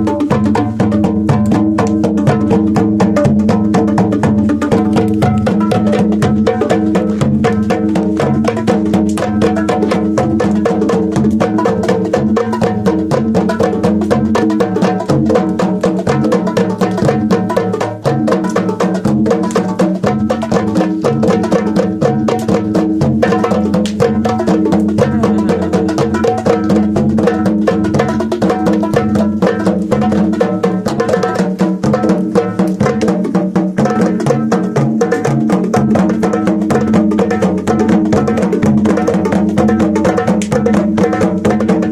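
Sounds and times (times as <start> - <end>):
hand drums played fast: 0.0 - 41.9
held low tones: 23.2 - 26.8.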